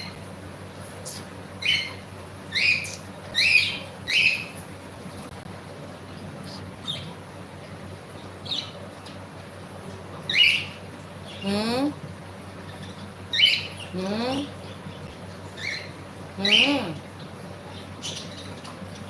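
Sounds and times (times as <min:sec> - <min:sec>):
cockatiel chirping: 0:01.6 - 0:04.5.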